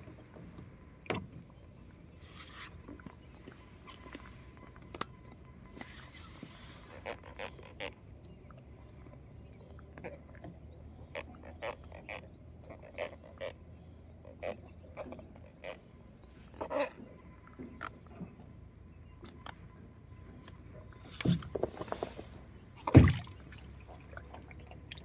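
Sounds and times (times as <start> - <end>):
low steady hum: 13.6 - 25.0.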